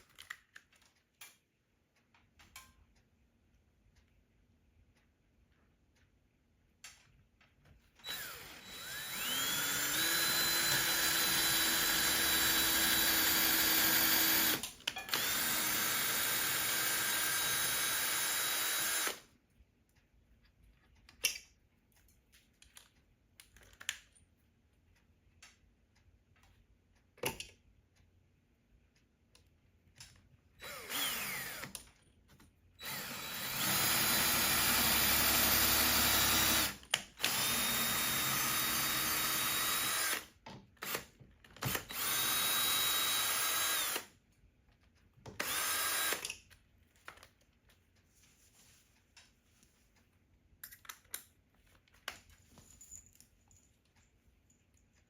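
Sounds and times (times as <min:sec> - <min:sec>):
power drill running: 0:08.0 - 0:19.2, 0:30.6 - 0:31.8, 0:32.8 - 0:41.1, 0:41.7 - 0:44.1, 0:45.4 - 0:46.3.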